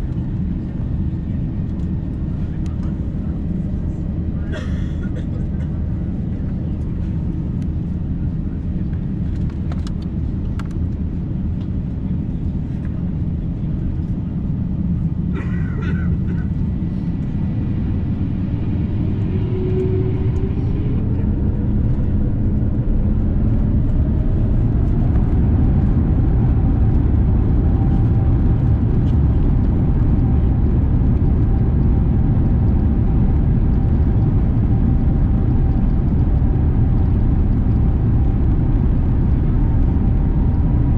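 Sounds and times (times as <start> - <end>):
jet engines rumbling: 0.0 - 40.9
engine whine rising in pitch: 16.7 - 40.9.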